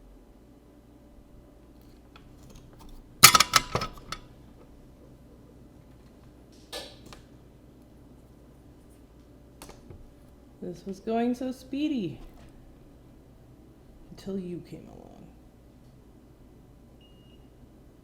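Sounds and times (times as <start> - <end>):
low steady hum: 0.0 - 6.5
small tools clicking and clattering: 1.8 - 4.2.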